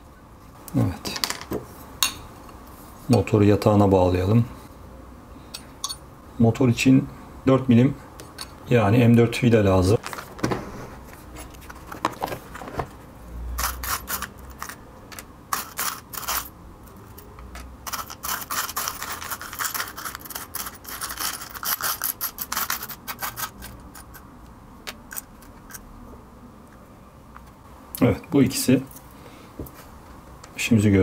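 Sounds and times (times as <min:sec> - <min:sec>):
metal screws clicking and rattling: 0:13.6 - 0:16.5, 0:17.1 - 0:24.2.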